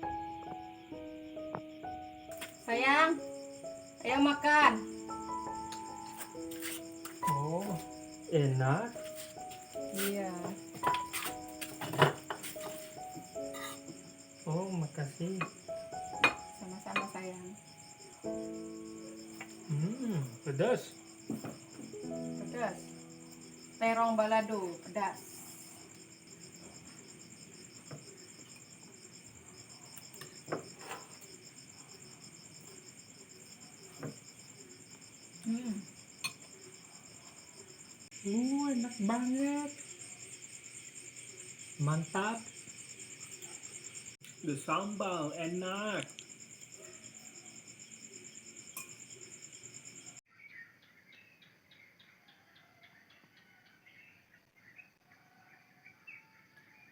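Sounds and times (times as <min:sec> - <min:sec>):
crickets chirping: 0:00.0 - 0:56.9
soft knocks: 0:21.3 - 0:22.0
bird chirping: 0:50.3 - 0:55.0.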